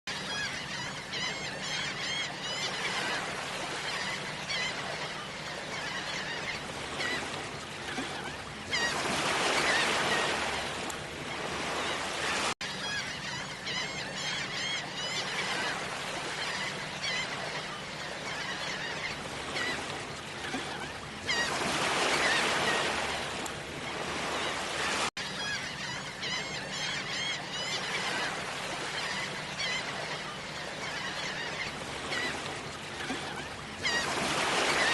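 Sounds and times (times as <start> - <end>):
birds calling: 0.1 - 34.9
surf washing: 25.8 - 34.9.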